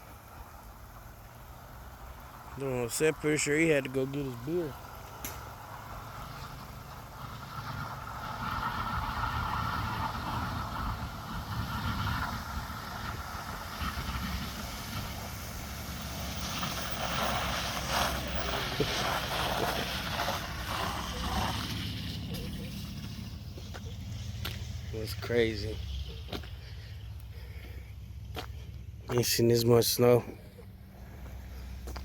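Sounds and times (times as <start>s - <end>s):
car tyres hissing through slush: 0.0s - 32.0s
wind rumble on microphone: 7.5s - 16.7s.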